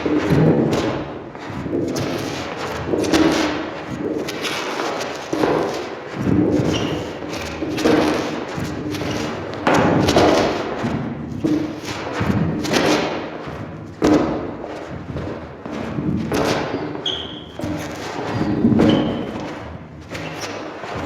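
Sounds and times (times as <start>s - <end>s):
brief high squeak: 17.0s - 17.6s.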